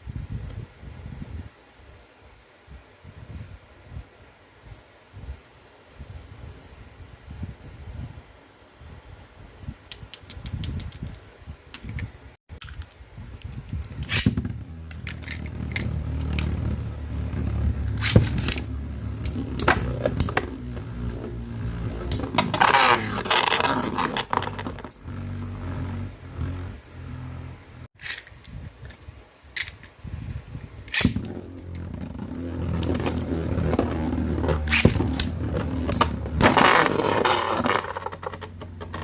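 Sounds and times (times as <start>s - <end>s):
spinning tops whirring: 14.1s - 27.9s, 31.0s - 39.0s.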